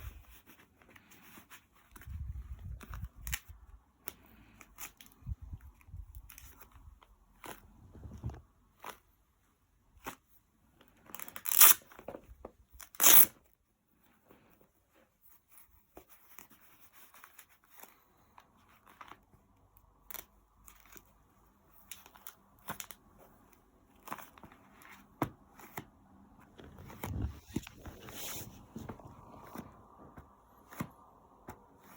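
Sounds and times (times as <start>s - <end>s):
faint rustling: 26.1s - 31.9s.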